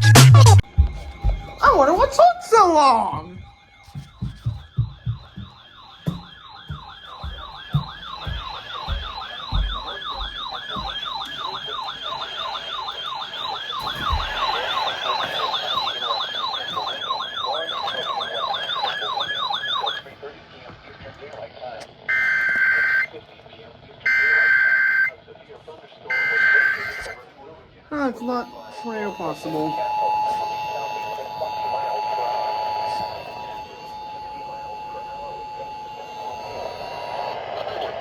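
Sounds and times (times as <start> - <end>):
low thumps: 0.0 - 2.2, 3.1 - 11.2
electronic siren yelping: 0.0 - 20.1, 26.1 - 27.2, 28.0 - 38.0.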